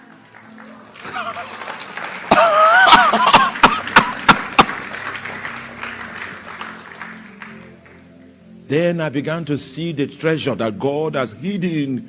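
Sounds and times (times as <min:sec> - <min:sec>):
sharp claps: 0:00.0 - 0:08.0
applause and crowd noise: 0:00.0 - 0:08.4.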